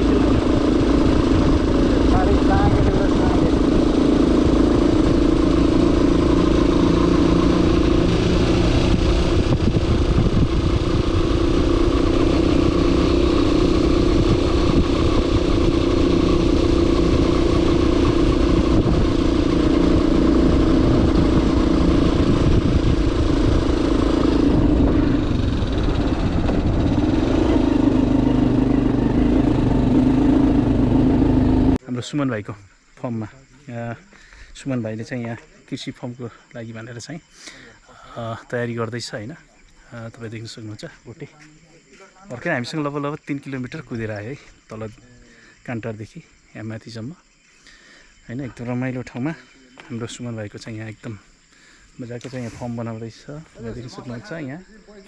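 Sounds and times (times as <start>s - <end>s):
motorcycle engine running: 0.0s - 31.8s
road and wind noise: 0.0s - 31.8s.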